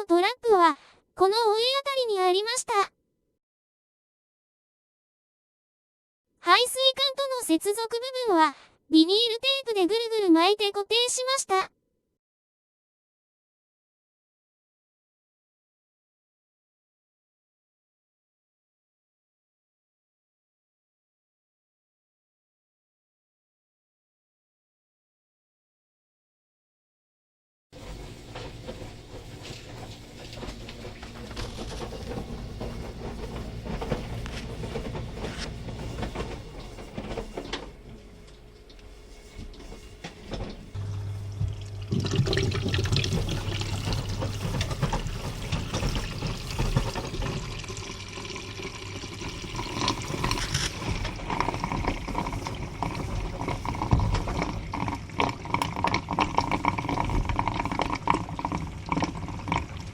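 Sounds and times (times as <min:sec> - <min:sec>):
low machine hum: 0:27.8 - 0:59.9
water rushing into drain: 0:40.8 - 0:59.9.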